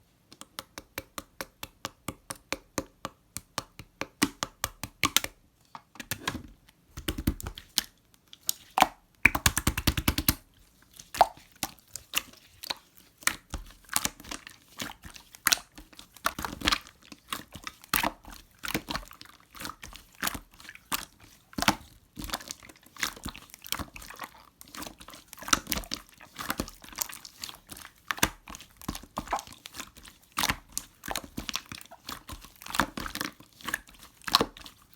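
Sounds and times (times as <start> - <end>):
slime squishing and popping: 7.0 - 10.4, 11.0 - 34.8.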